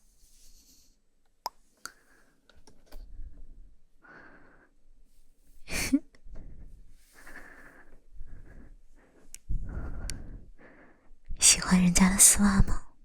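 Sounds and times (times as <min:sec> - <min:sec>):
woman breathing: 0:04.0 - 0:04.8, 0:05.7 - 0:11.3.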